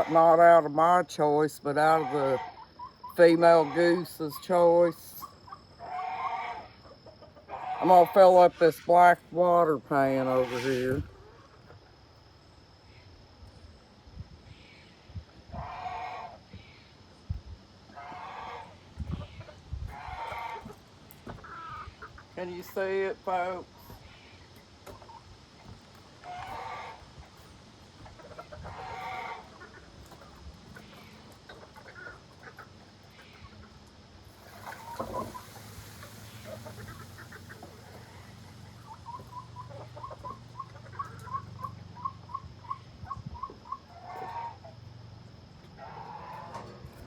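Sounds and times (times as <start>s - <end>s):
chickens clucking: 0.0s - 13.1s, 15.2s - 47.0s.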